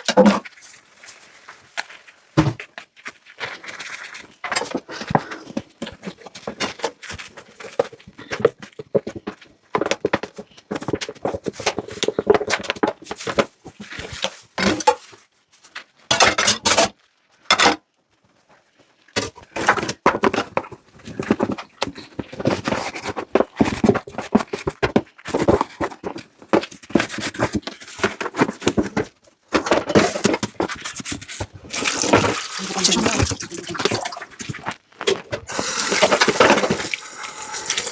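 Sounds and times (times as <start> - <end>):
dishes and cutlery clinking: 16.1 - 16.9.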